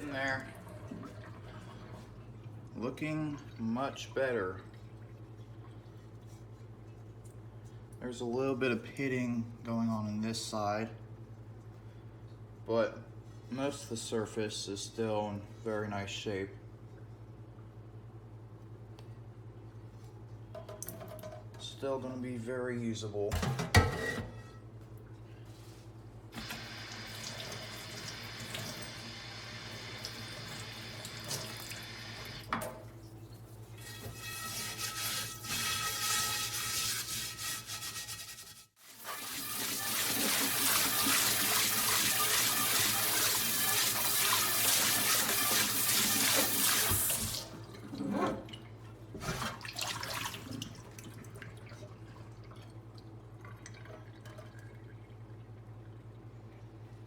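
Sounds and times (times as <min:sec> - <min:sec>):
low steady hum: 0:00.0 - 0:37.8, 0:47.2 - 0:57.0
tap water running into sink: 0:26.4 - 0:32.8, 0:38.9 - 0:47.8.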